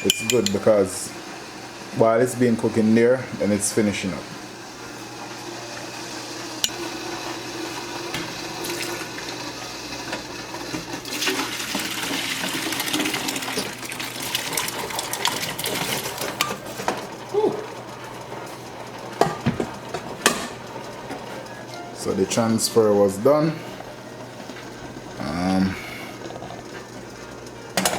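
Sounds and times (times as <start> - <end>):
metal knocking on pot: 0.0 - 0.7
utensil clinking on metal pot: 0.0 - 0.7.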